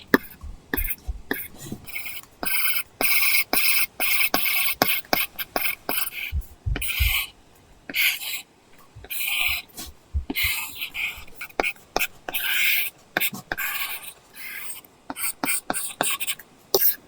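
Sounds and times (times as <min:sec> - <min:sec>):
dull low thumps: 0:00.0 - 0:01.9, 0:06.2 - 0:07.9, 0:08.8 - 0:11.4
stylus tip tapping: 0:00.0 - 0:02.6, 0:04.4 - 0:07.3, 0:08.8 - 0:11.5
stylus scratching on tablet screen: 0:00.0 - 0:17.0.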